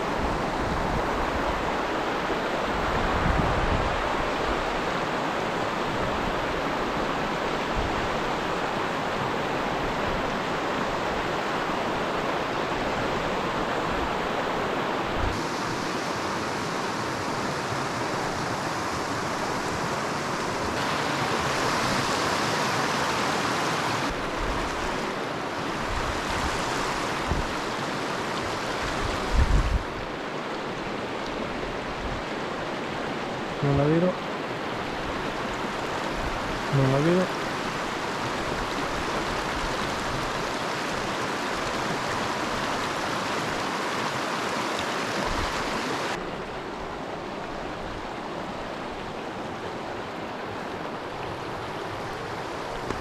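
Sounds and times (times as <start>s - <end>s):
stream rushing over rocks: 0.0s - 53.0s
wind buffeting microphone: 28.8s - 30.1s.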